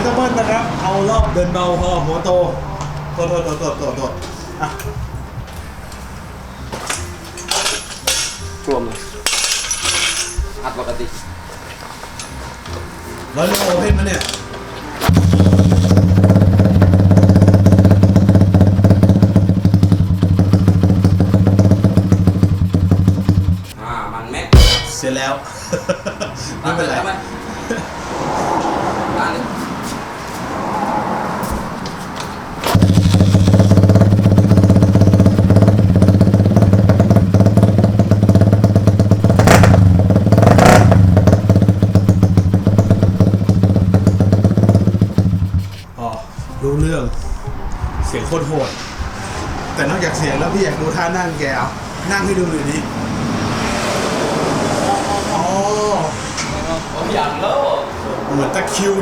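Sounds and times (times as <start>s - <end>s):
motorcycle engine idling loudly: 15.1s - 23.6s, 32.7s - 45.8s.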